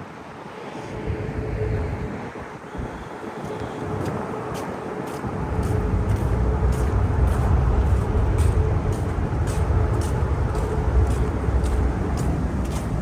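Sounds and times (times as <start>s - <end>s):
footsteps crunching in snow: 3.4s - 13.0s
loud low rumble: 5.3s - 13.0s.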